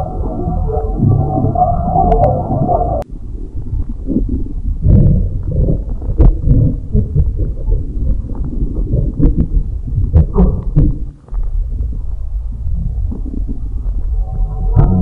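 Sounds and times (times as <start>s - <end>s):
stomach rumbling and gurgling: 0.0s - 15.0s
sharp pops and squelches: 3.6s - 12.0s.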